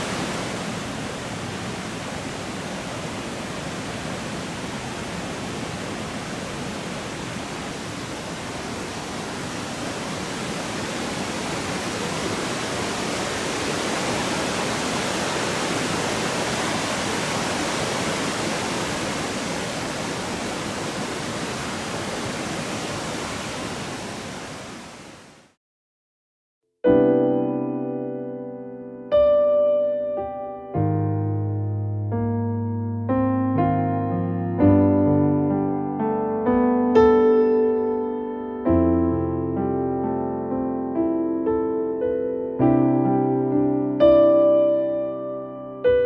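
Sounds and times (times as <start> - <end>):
waterfall rushing: 0.0 - 25.6.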